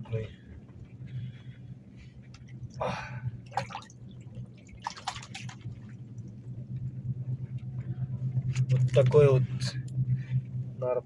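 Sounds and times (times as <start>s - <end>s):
steady low hum: 0.0s - 11.0s
water splashing and dripping: 3.4s - 6.4s.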